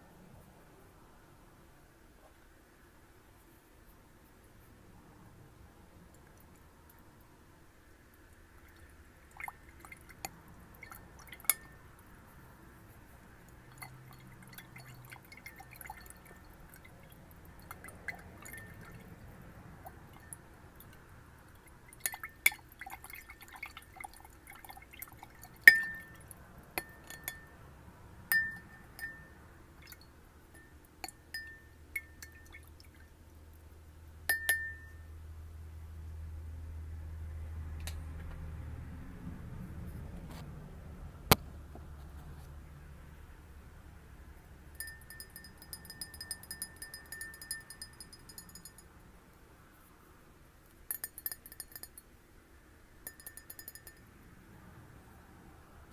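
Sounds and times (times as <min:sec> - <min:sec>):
water sounds: 0:08.5 - 0:12.2, 0:13.4 - 0:27.3
glass tapped ringing: 0:11.5 - 0:11.8, 0:25.7 - 0:26.2, 0:26.8 - 0:27.6, 0:28.3 - 0:32.5, 0:34.3 - 0:35.1, 0:44.8 - 0:48.9, 0:50.9 - 0:52.0, 0:53.0 - 0:54.1.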